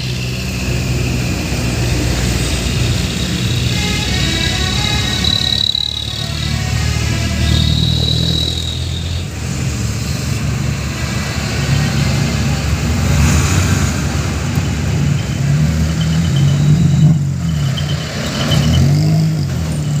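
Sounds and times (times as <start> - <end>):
thin high tone: 0.0 - 9.5
truck diesel engine revving: 0.0 - 20.0.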